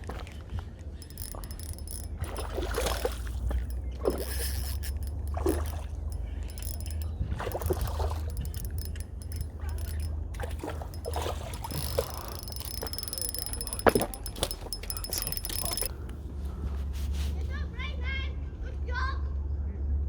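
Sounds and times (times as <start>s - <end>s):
fishing reel winding: 1.0s - 15.9s.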